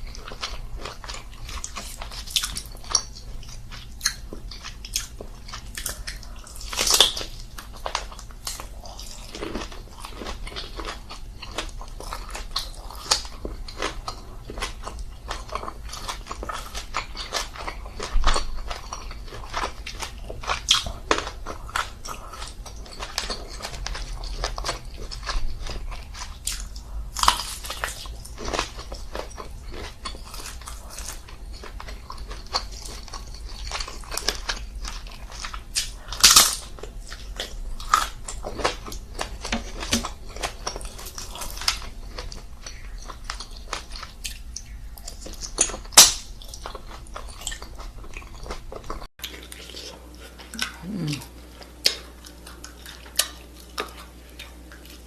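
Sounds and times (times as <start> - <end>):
crunchy chewing of seafood shells: 0.0 - 55.0.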